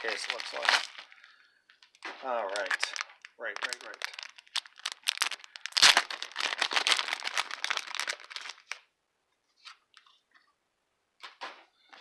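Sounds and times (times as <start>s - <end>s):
packaging crinkling: 0.0s - 8.9s.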